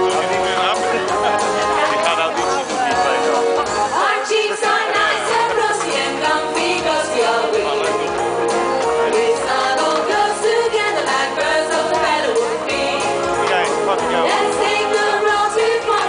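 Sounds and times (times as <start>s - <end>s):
musical accompaniment: 0.0s - 16.0s
women singing: 3.8s - 7.7s, 9.0s - 13.4s, 14.1s - 16.0s.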